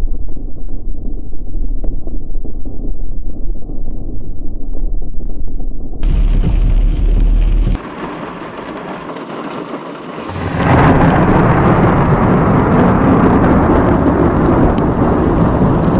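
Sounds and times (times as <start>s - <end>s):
rain: 6.0s - 15.9s
thunder rumbling: 6.0s - 15.9s.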